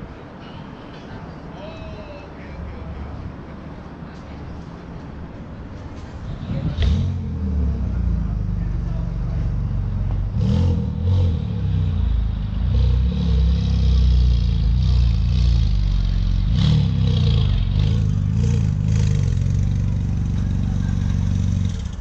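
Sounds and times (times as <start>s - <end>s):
low engine rumble: 0.0s - 22.0s
car engines revving: 4.6s - 22.0s.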